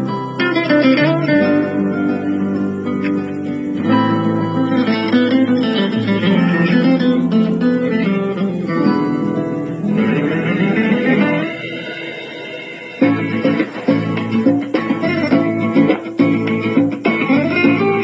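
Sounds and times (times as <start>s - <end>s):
acoustic guitar music: 0.0s - 18.0s.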